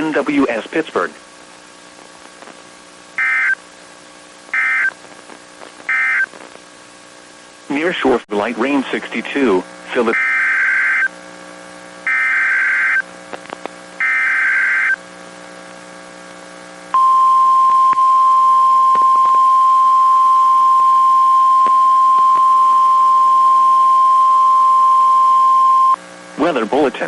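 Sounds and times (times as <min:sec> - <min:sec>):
buzzy digital data bursts: 0:12.0 - 0:13.0, 0:14.0 - 0:15.0
steady attention tone: 0:14.0 - 0:15.0, 0:16.9 - 0:26.0.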